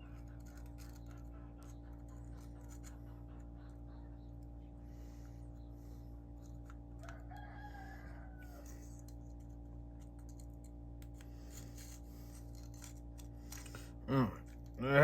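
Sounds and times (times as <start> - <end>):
low steady hum: 0.0 - 15.0
small clicks of reel parts: 6.4 - 14.8.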